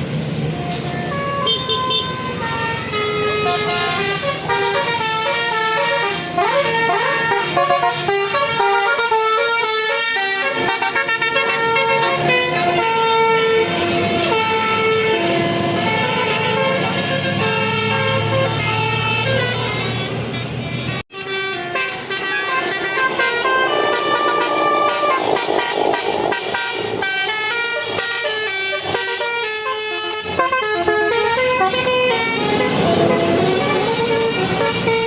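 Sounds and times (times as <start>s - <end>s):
musical air horn melody: 0.6s - 35.0s
low engine rumble: 12.2s - 35.0s.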